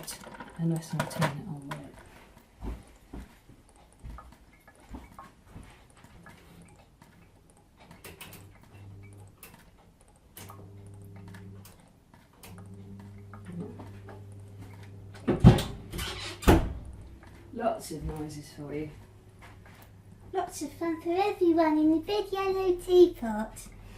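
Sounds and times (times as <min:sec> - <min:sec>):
electric oven humming: 0:06.5 - 0:23.9.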